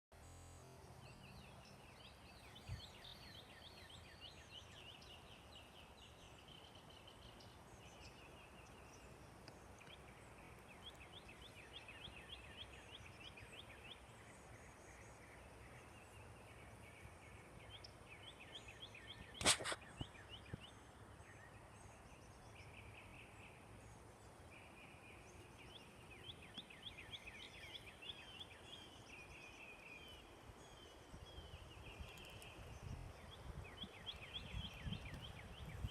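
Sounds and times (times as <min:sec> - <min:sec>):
sharp click: 0:19.4 - 0:20.1.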